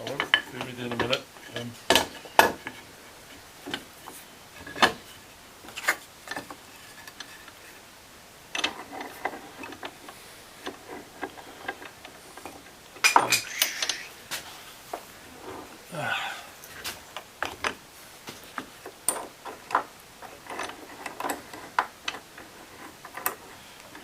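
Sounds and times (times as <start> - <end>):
metal clamps knocking and clicking: 0.0 - 2.8, 10.6 - 14.1, 18.6 - 24.0.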